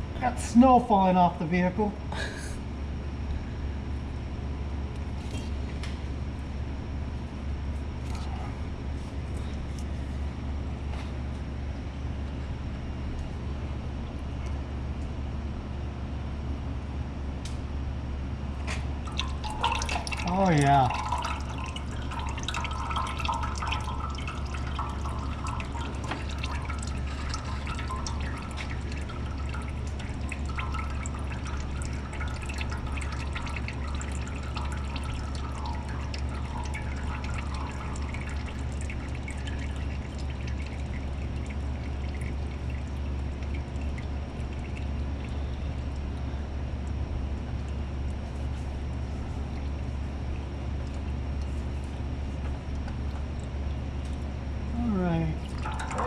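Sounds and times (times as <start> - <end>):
constant low hum: 0.0 - 56.0
liquid dripping and trickling: 7.2 - 11.1, 18.6 - 56.0.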